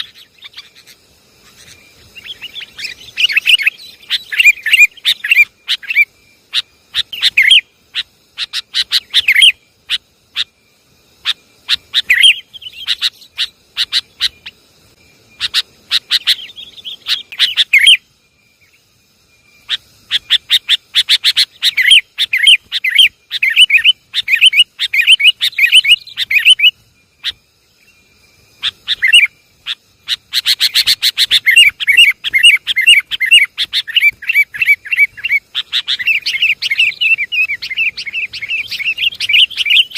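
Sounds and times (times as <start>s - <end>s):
bird chattering calls: 0.0s - 10.6s, 11.2s - 14.6s, 15.4s - 18.0s, 19.6s - 27.4s, 28.6s - 39.9s.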